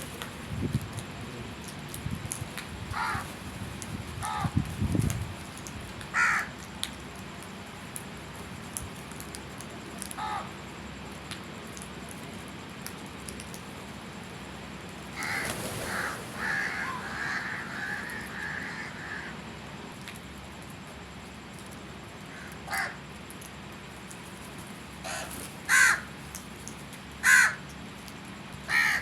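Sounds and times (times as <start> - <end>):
crows cawing: 2.9 - 3.3, 4.2 - 4.6, 6.1 - 6.6, 10.2 - 10.5, 15.2 - 19.4, 22.3 - 23.0, 25.0 - 26.2, 27.2 - 27.7, 28.7 - 29.0.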